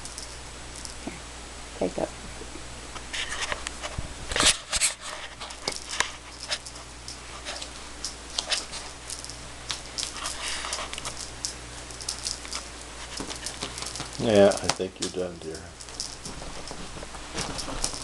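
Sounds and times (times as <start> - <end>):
cat batting feathers rustling: 4.3 - 18.0.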